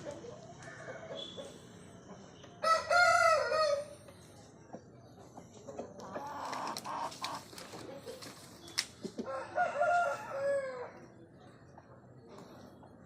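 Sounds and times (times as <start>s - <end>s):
rooster crowing: 2.6s - 3.9s, 9.3s - 11.0s.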